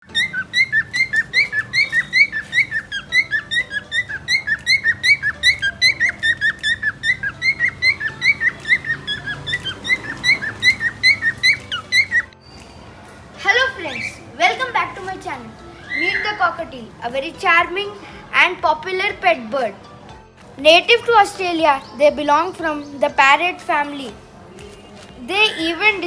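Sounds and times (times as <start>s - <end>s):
cockatiels chirping: 0.0s - 12.8s, 13.6s - 16.7s.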